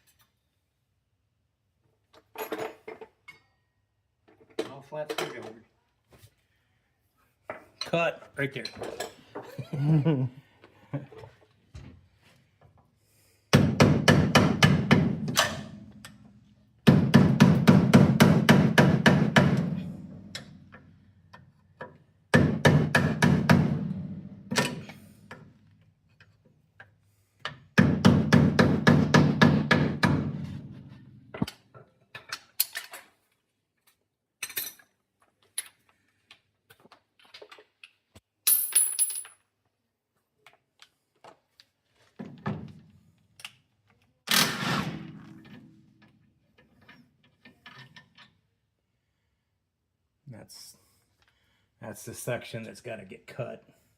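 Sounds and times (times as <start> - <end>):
tools clicking and knocking: 20.3 - 22.1, 24.5 - 27.9, 31.3 - 33.2, 33.8 - 39.5, 45.3 - 48.5.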